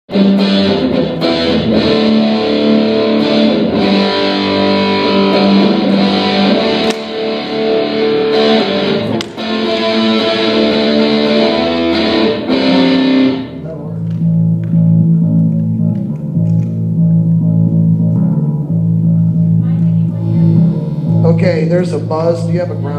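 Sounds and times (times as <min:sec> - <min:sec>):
distorted electric guitar: 0:00.1 - 0:22.9.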